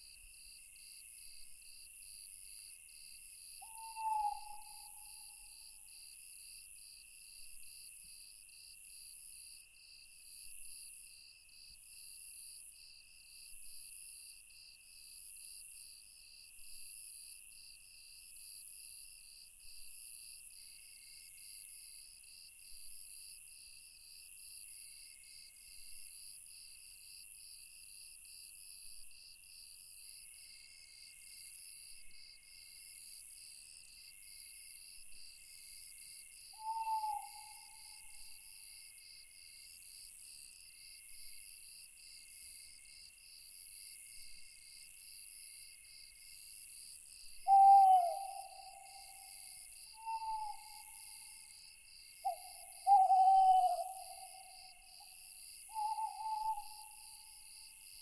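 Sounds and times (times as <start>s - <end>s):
owl hooting: 3.6s - 5.3s, 36.6s - 38.2s, 47.5s - 51.4s, 52.2s - 55.0s, 55.7s - 57.2s
crickets and insects chirping: 3.6s - 5.8s, 30.3s - 58.0s.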